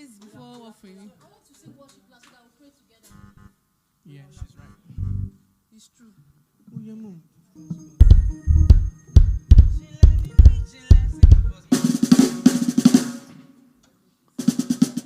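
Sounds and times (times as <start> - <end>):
heavy low drum hits: 8.0 - 11.5
snare drum roll: 8.0 - 13.4, 14.4 - 15.0.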